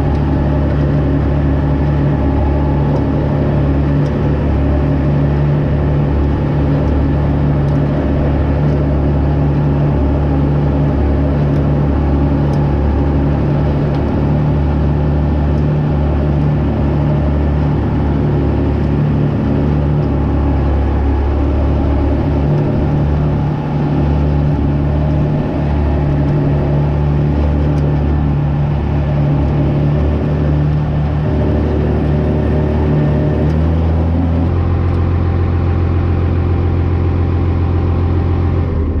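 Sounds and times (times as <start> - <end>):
truck engine running: 0.0 - 39.0.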